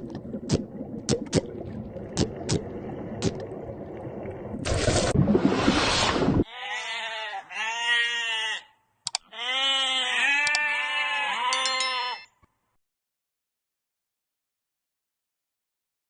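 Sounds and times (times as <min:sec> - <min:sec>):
animal bleating: 0:06.4 - 0:12.3
click: 0:09.0 - 0:09.2, 0:10.4 - 0:10.6.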